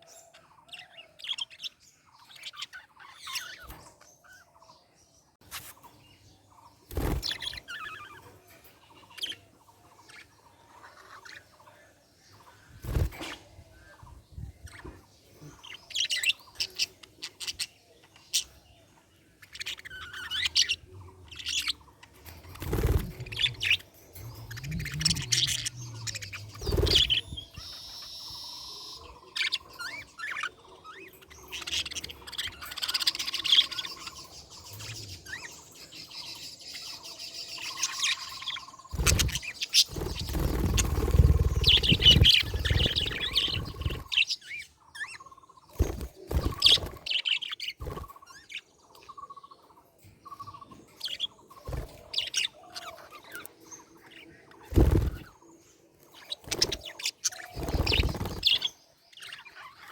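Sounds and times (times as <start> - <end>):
budgerigars chirping: 19.3 - 49.6, 56.2 - 59.9.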